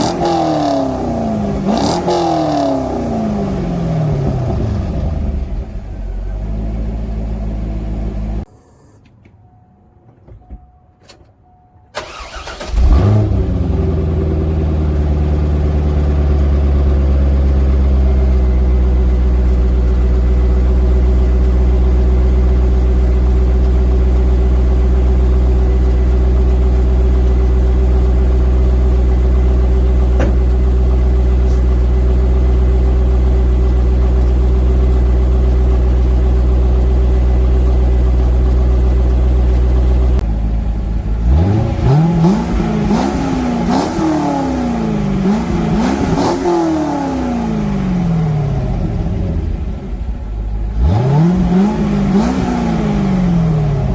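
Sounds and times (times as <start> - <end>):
car starter cranking: 8.4 - 14.0.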